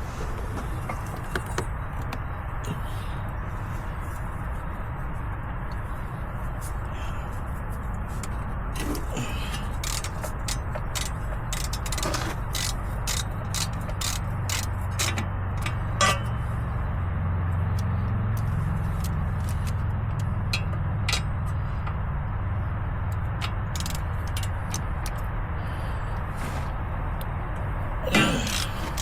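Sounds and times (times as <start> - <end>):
steady low rumble: 0.0 - 29.0
wrench metallic clicks: 8.2 - 16.4, 23.1 - 25.3, 28.1 - 29.0.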